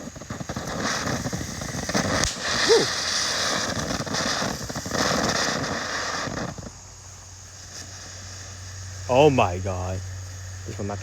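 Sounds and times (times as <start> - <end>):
firework hissing and crackling: 0.0 - 11.0
low steady hum: 6.6 - 11.0.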